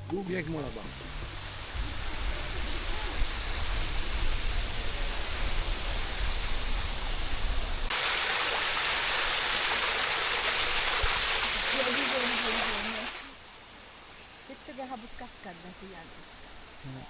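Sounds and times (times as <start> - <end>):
low water rumble: 0.0 - 13.4
river and waterfalls rushing: 0.3 - 16.8.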